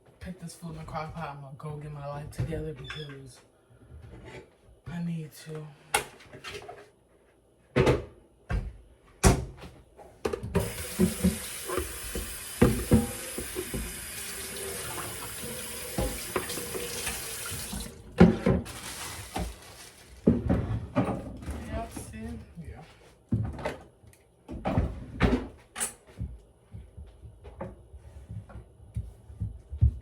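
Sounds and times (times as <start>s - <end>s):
knocks and clatter in a sink: 10.2s - 22.0s
tap running into a sink: 10.5s - 18.3s.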